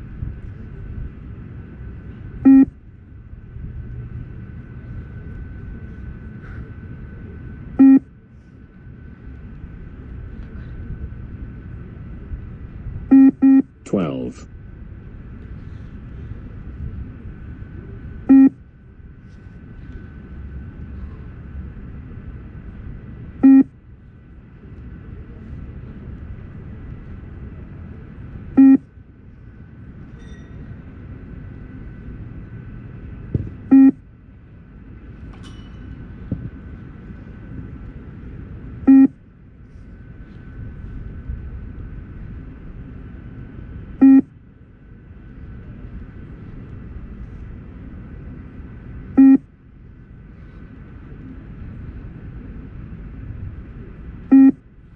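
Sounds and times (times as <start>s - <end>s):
steady low background noise: 0.0s - 54.9s
short electronic beep: 2.5s - 2.7s, 7.8s - 8.0s, 18.3s - 18.6s, 23.4s - 23.7s, 28.6s - 28.8s, 33.7s - 34.0s, 38.9s - 39.1s, 44.0s - 44.3s, 49.2s - 49.4s, 54.3s - 54.6s.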